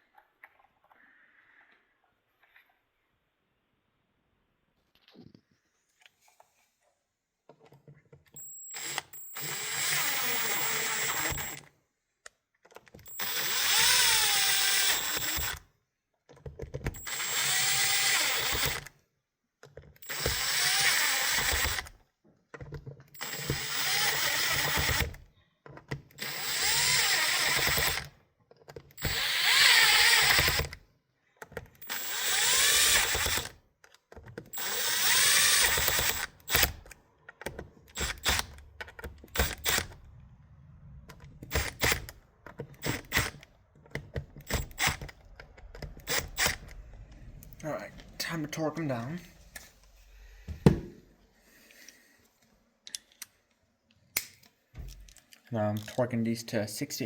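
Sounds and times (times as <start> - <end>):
cordless drill driving bolts: 8.4 - 11.7, 12.8 - 15.7, 16.7 - 19.0, 19.8 - 28.2, 28.8 - 30.8, 31.4 - 40.0, 41.1 - 49.7.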